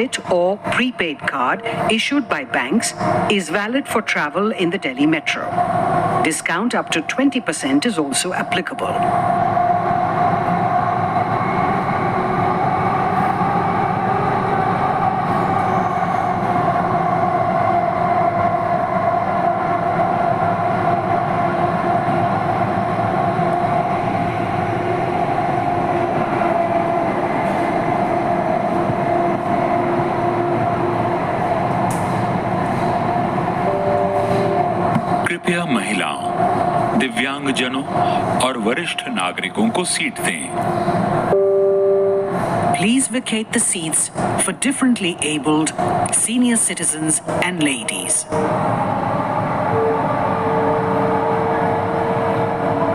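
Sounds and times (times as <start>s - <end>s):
train wheels rumbling on track: 0.0s - 41.3s.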